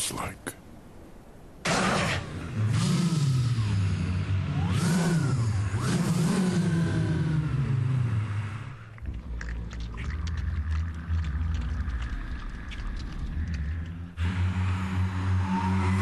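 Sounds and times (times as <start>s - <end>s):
choir imitating engine revving: 1.7s - 9.1s, 13.2s - 16.0s.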